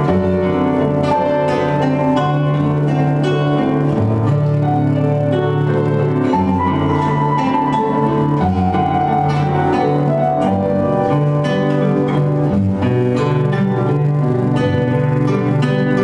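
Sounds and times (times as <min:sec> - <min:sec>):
held bass notes: 0:00.0 - 0:16.0
plucked guitar melody: 0:00.0 - 0:16.0.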